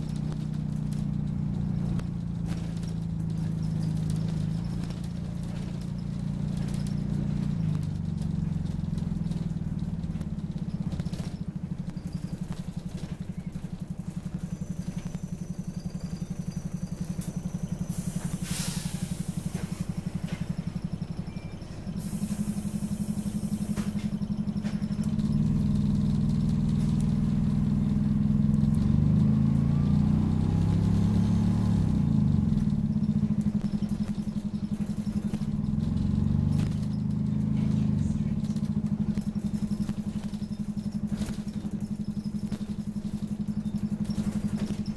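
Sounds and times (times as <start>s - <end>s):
bus engine chugging: 0.0s - 44.9s
air hiss bursts: 17.9s - 19.8s, 22.0s - 24.0s.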